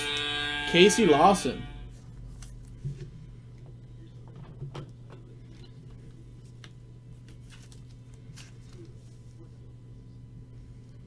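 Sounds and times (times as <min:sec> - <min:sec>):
steady low hum: 0:00.0 - 0:11.0
cards clicking and rustling: 0:05.5 - 0:09.2.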